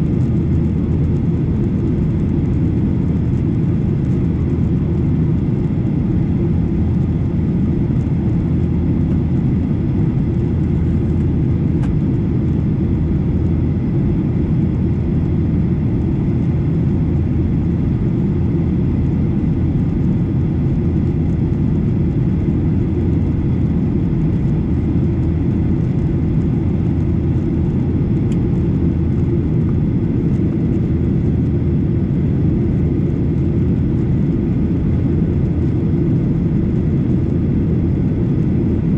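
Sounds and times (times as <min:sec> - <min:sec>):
jet engine rumble: 0:00.0 - 0:38.9.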